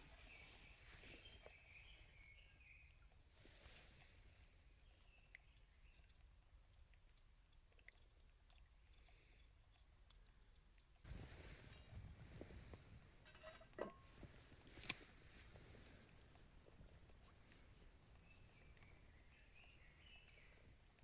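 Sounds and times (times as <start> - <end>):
faint bird chirps: 0.1 - 3.0, 18.2 - 21.0
faint small clicks: 14.7 - 15.1.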